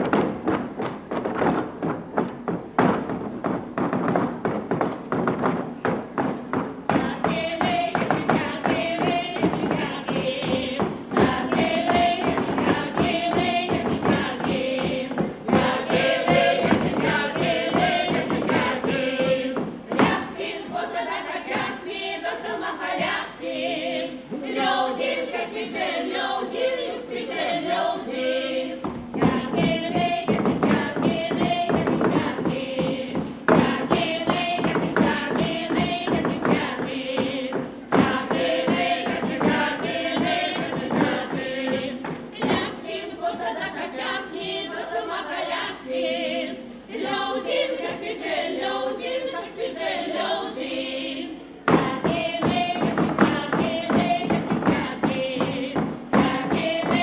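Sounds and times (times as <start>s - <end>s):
choir singing folk song: 6.8s - 57.0s.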